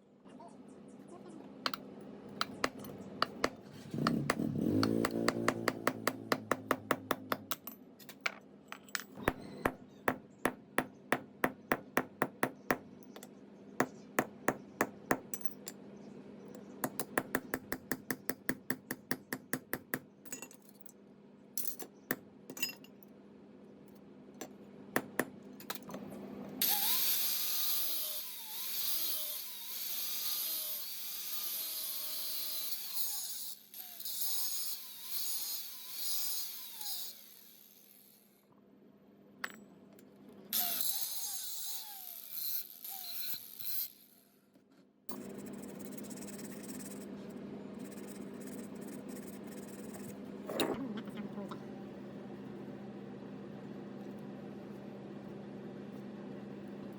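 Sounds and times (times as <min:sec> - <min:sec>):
steady low hum: 0:45.1 - 0:56.9.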